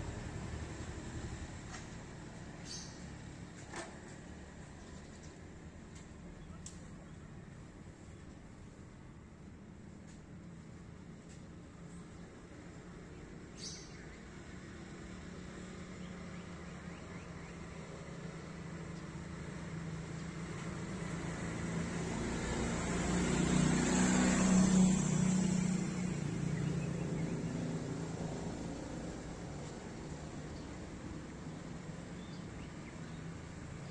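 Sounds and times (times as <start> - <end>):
road vehicle passing: 0.0 - 4.8, 13.6 - 33.9.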